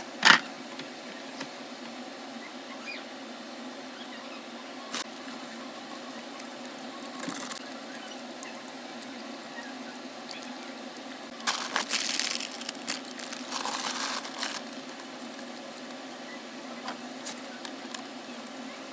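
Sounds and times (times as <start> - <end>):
steady background hum: 0.0 - 18.9
food packaging crinkling: 6.4 - 9.4, 10.3 - 16.0.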